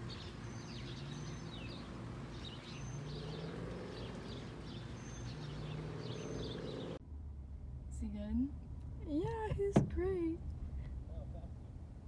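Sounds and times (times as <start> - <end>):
birds chirping: 0.0 - 7.0.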